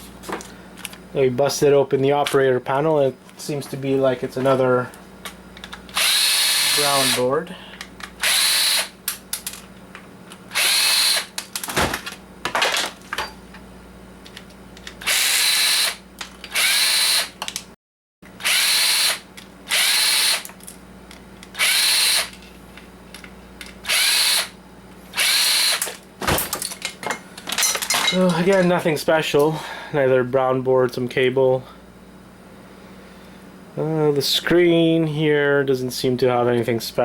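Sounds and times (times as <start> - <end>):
power drill bursts: 5.9 - 7.2, 8.2 - 9.0, 10.5 - 11.4, 15.0 - 17.4, 18.4 - 20.5, 21.6 - 22.3, 23.8 - 25.9.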